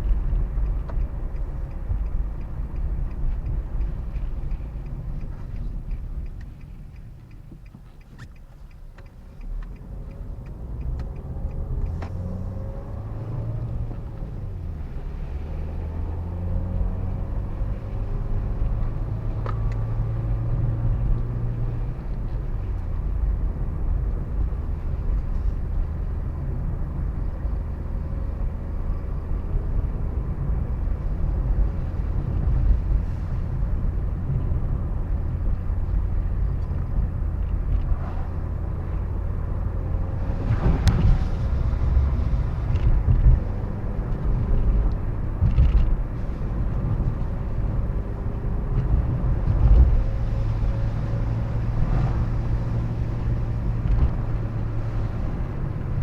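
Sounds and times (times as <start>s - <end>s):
car road and engine noise: 0.0s - 56.0s.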